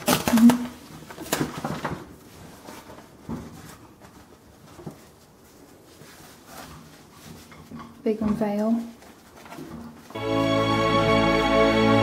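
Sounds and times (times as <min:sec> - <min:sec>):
packaging rustling: 0:00.0 - 0:07.0.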